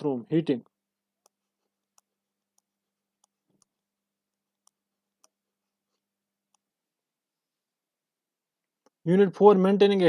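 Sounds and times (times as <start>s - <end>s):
faint irregular clicks: 1.2s - 6.8s.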